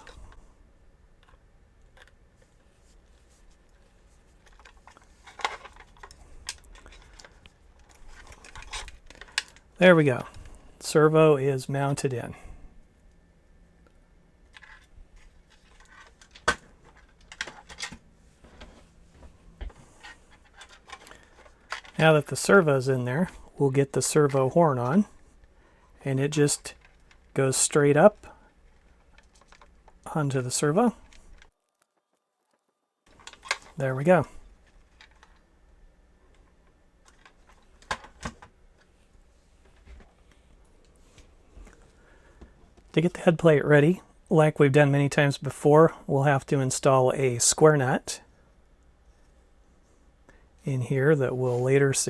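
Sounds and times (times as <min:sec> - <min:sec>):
small hard parts clicking and rattling: 0:03.7 - 0:09.7, 0:20.0 - 0:22.1, 0:28.2 - 0:30.1, 0:34.6 - 0:35.5.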